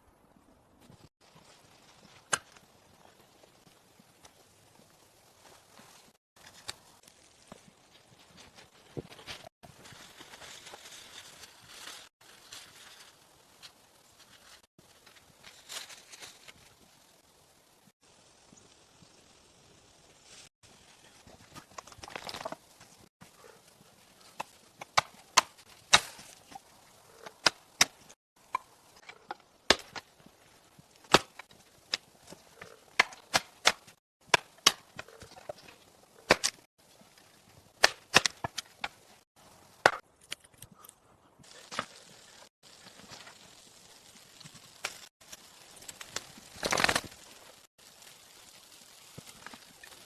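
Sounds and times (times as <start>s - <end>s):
axe chopping wood: 29.7s - 30.0s, 33.0s - 35.2s, 36.3s - 36.6s, 37.8s - 39.0s.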